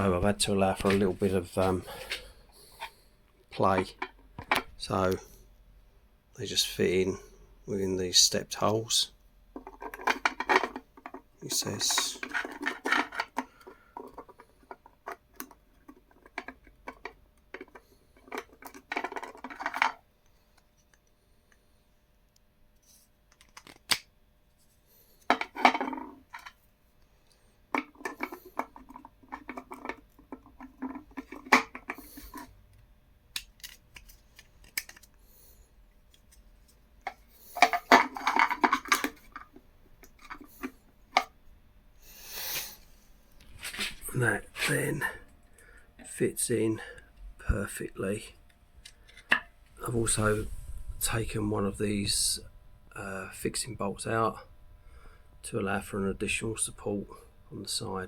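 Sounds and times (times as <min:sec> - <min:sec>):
plastic and metal parts clattering: 0:00.2 - 0:03.0, 0:09.6 - 0:20.1, 0:25.2 - 0:26.6, 0:27.7 - 0:32.6, 0:36.1 - 0:41.4.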